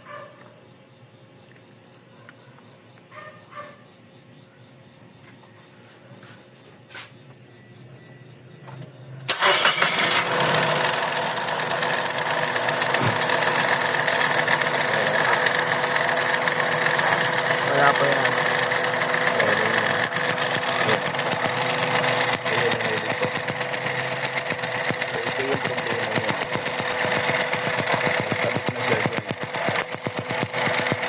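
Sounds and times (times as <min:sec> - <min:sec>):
car engine misfiring: 0:08.7 - 0:31.0.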